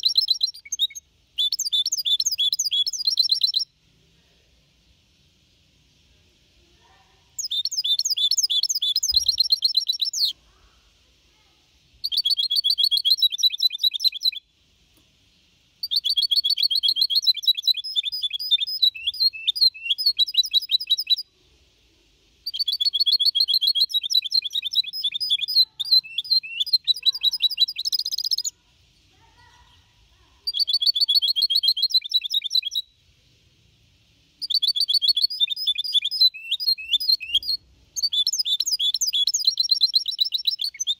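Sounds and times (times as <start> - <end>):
bird singing high trills: 0.0 - 3.7, 7.4 - 10.3, 12.0 - 14.4, 15.8 - 21.3, 22.5 - 28.5, 30.5 - 33.0, 34.4 - 40.9.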